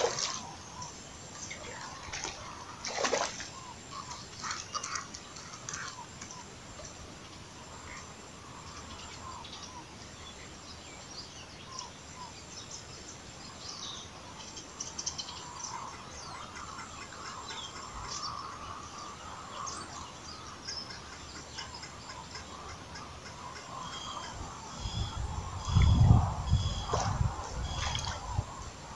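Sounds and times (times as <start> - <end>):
steady outdoor hiss: 0.0 - 28.9
birds chirping and calling: 13.6 - 28.8.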